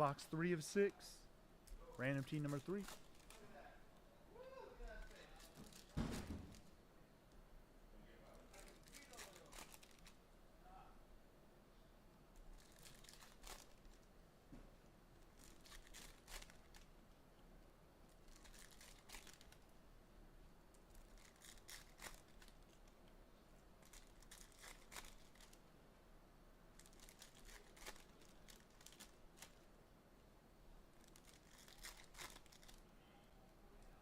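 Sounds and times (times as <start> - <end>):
foil wrappers tearing and crinkling: 2.2 - 3.4, 8.5 - 10.2, 12.5 - 14.0, 15.4 - 16.9, 18.2 - 19.6, 21.0 - 22.9, 23.8 - 25.6, 26.8 - 29.6, 31.0 - 32.8.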